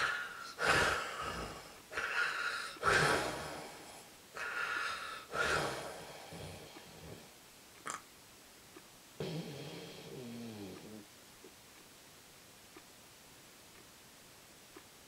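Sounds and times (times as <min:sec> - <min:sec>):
loud snoring: 0:05.3 - 0:07.2, 0:09.2 - 0:11.1.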